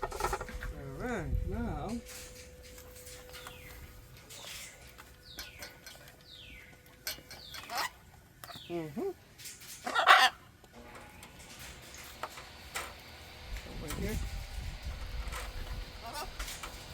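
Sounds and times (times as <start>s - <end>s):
macaws calling: 0.0s - 0.7s, 9.8s - 10.4s.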